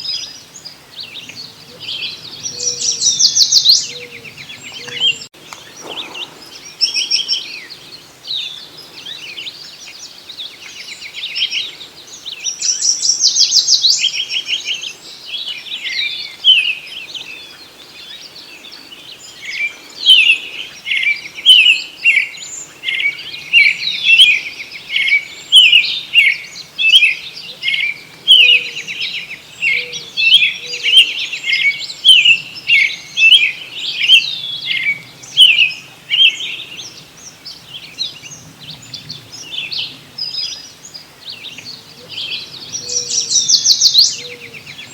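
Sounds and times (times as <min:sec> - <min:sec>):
birds singing and chirping: 0:00.0 - 0:44.9
bird trill: 0:01.8 - 0:08.6.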